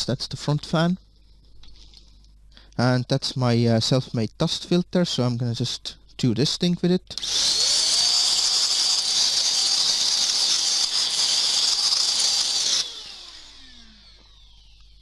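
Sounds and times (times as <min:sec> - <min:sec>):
fan whining: 0:07.1 - 0:15.0.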